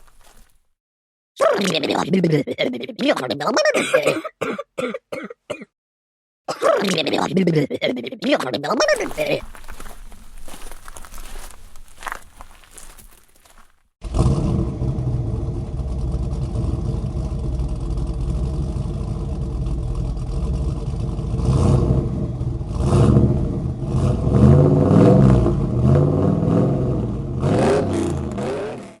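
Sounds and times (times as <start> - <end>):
vehicle engine revving: 14.0 - 29.0.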